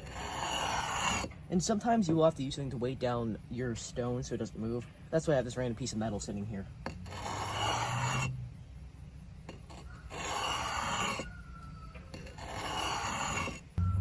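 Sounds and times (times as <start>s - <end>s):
axe blade scraping on whetstone: 0.0s - 1.5s, 6.2s - 8.4s, 9.4s - 11.4s, 12.0s - 13.8s.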